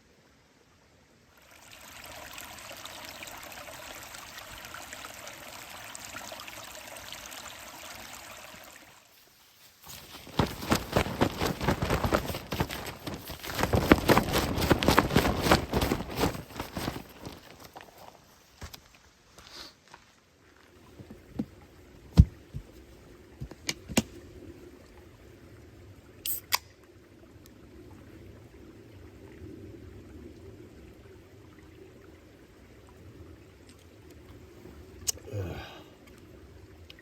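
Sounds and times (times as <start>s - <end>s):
water pouring: 1.4s - 9.0s.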